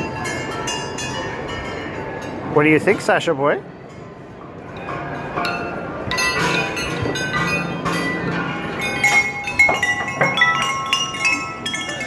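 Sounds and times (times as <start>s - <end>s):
metal clanging: 4.7s - 12.0s.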